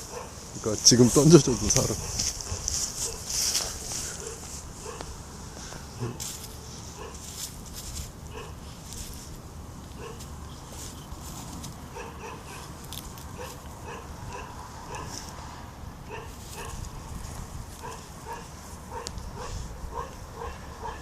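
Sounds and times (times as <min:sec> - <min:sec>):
puppy yapping: 0:08.3 - 0:08.6, 0:10.0 - 0:10.3, 0:11.9 - 0:12.7, 0:13.4 - 0:15.2, 0:17.8 - 0:21.0.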